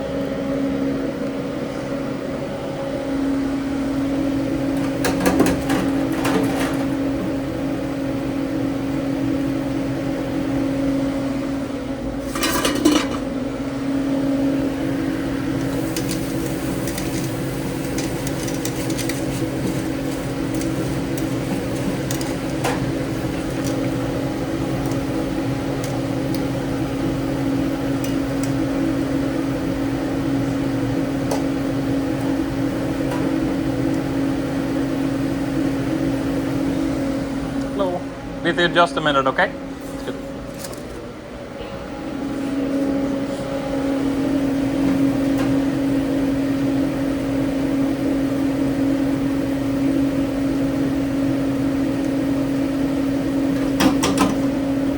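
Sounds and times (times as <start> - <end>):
kitchen equipment humming: 2.6 - 54.9
pans and utensils clattering: 4.8 - 7.1, 12.2 - 13.3, 15.6 - 24.2, 53.6 - 54.5.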